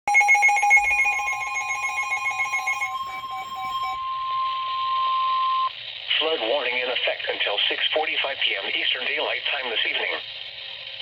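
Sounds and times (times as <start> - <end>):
rapid alarm beeping: 0.1 - 5.7
steady high warning tone: 0.1 - 5.8.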